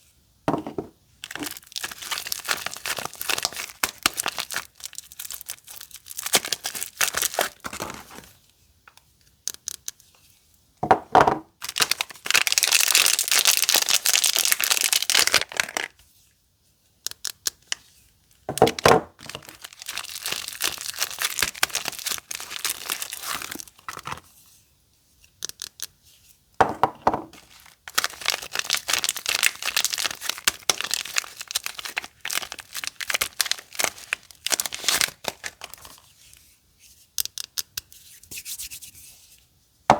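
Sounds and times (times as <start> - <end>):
wrappers crackling and tearing: 1.2 - 8.4, 11.6 - 16.0, 19.2 - 24.2, 27.4 - 36.1.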